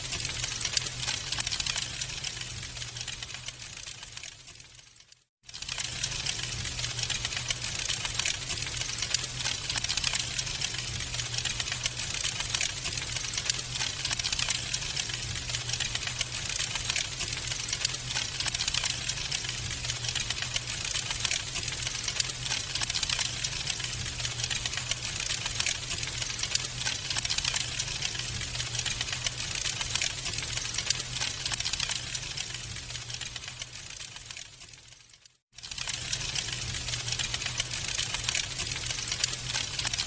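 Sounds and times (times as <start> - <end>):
wood fire crackling: 0.0 - 40.0.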